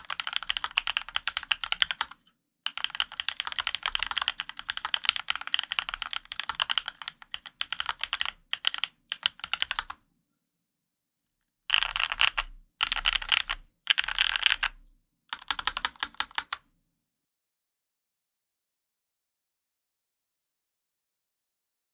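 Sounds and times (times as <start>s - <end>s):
fast typing on mechanical keyboard: 0.0s - 10.0s, 11.7s - 14.8s, 15.4s - 16.6s.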